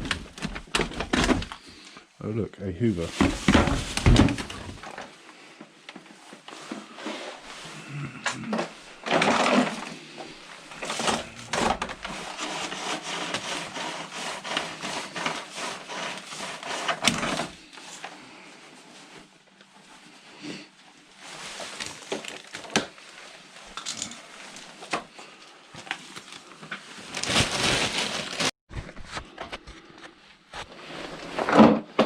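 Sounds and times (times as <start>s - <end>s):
rummaging through rubbish bin: 0.0s - 1.8s, 2.9s - 5.2s, 6.0s - 18.2s, 21.0s - 29.7s.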